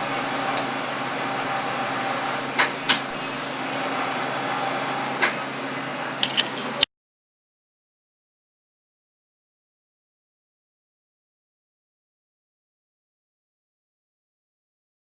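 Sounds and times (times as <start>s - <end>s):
welding arc buzzing hiss: 0.0s - 6.8s.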